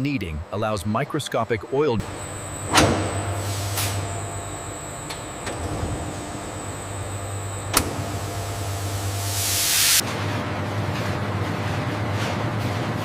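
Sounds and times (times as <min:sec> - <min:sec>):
machinery low hum: 0:01.9 - 0:13.0
high machine whine: 0:02.0 - 0:10.7.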